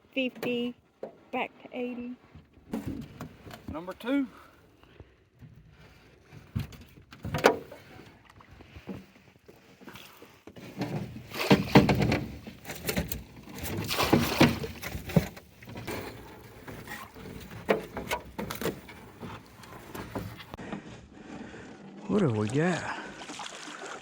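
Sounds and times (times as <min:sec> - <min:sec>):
water splashing: 0:11.2 - 0:17.6, 0:21.5 - 0:24.0.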